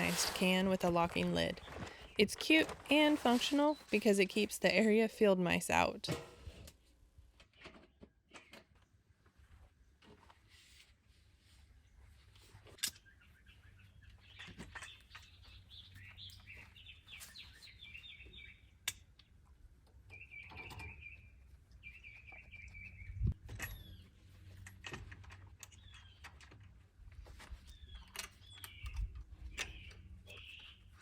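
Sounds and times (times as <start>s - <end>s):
birds chirping: 13.0s - 19.4s, 20.0s - 24.2s, 27.6s - 31.0s.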